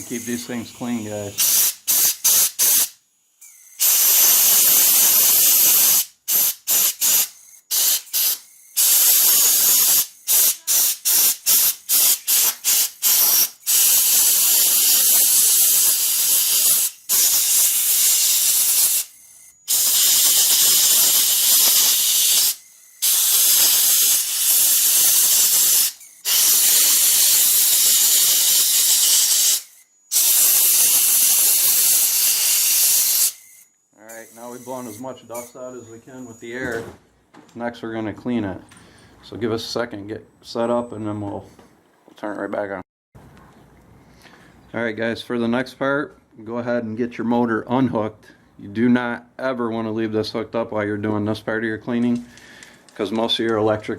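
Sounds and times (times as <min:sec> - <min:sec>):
compressed air blasting: 0:00.0 - 0:36.5.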